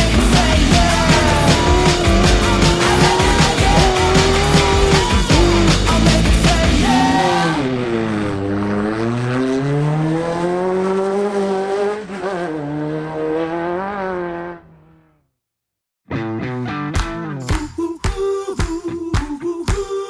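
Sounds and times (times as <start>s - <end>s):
race vehicle engine revving: 0.0s - 15.1s.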